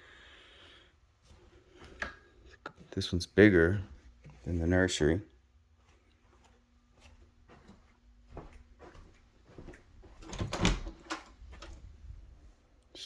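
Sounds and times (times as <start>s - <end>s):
closet door clicking and knocking: 10.1s - 11.8s.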